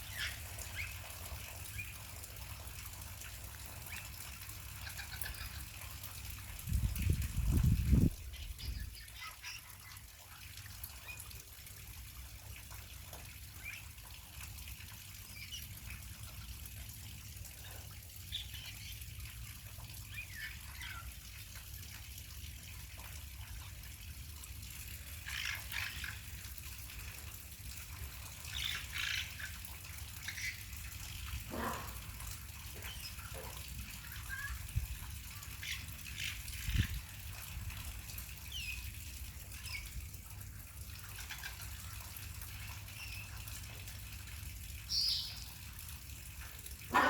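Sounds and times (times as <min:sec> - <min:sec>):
faint hiss of running water: 0:00.0 - 0:47.0
parrots squeaking and chirping: 0:08.4 - 0:09.9.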